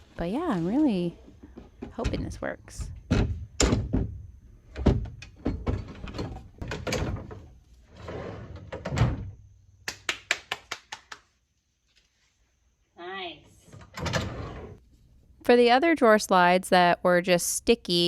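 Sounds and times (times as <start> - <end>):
drawer knocks and thuds: 3.0 - 4.2
drawer rolling scrape: 5.5 - 9.3, 13.8 - 14.8.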